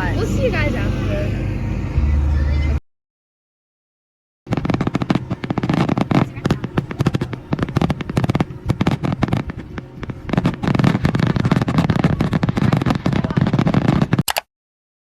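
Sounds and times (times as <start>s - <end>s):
fireworks bangs and crackles: 4.5s - 14.2s.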